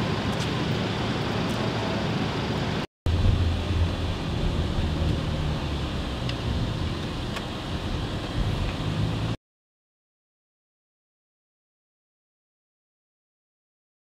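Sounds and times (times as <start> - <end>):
vehicle engine and road noise: 0.0 - 9.4
wind: 0.0 - 9.4.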